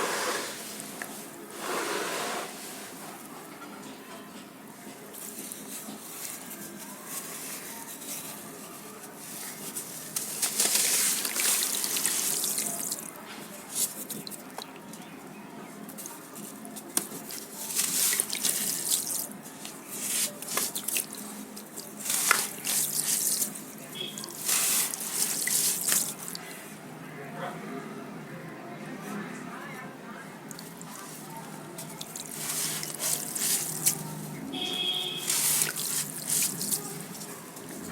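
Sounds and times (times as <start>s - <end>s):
water dripping: 30.5s - 31.0s, 31.8s - 34.0s, 35.0s - 37.8s.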